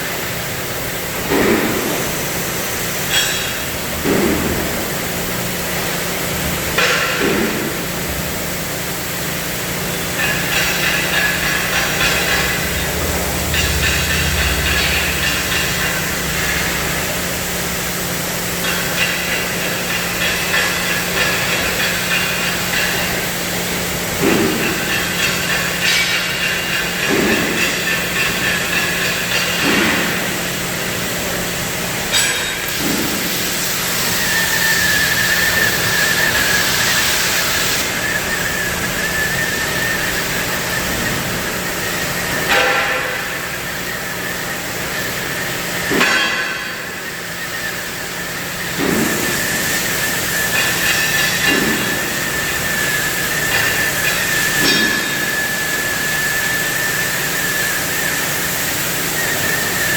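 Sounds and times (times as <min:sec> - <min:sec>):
low hum: 0:12.1 - 0:17.8.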